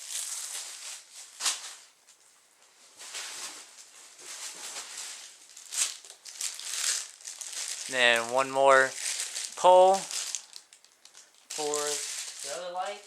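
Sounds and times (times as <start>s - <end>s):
packing peanuts rustling: 0.0s - 2.0s, 2.9s - 13.0s
sharp crackle: 4.7s - 13.0s.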